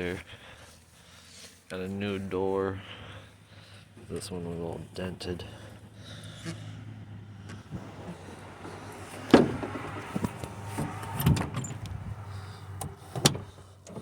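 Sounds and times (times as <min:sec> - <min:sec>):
van door clunk: 0:07.4 - 0:14.0.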